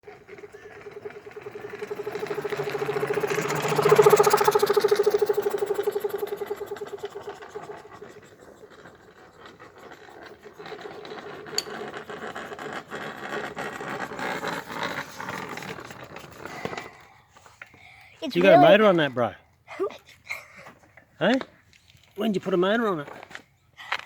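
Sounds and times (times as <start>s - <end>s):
air compressor pump pulsing: 0.0s - 17.0s.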